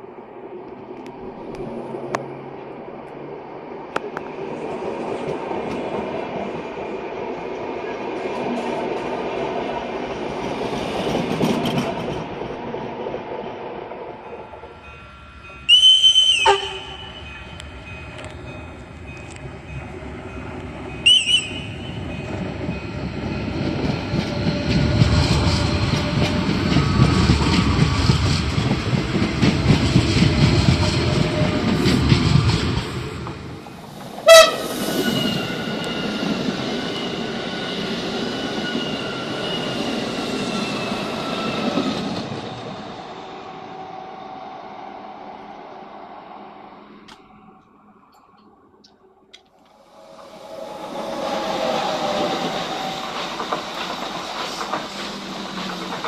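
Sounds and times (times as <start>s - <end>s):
trains rolling along track: 0.0s - 56.0s
train horn blasts: 15.7s - 17.4s, 21.0s - 22.0s, 34.2s - 35.6s.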